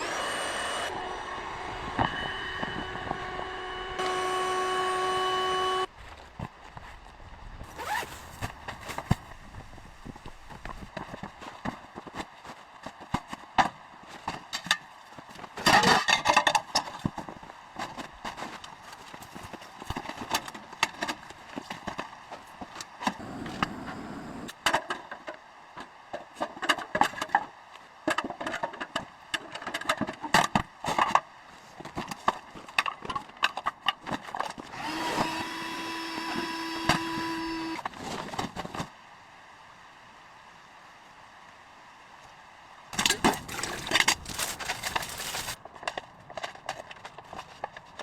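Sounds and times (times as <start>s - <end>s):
steady hiss with held tone: 23.2s - 24.6s.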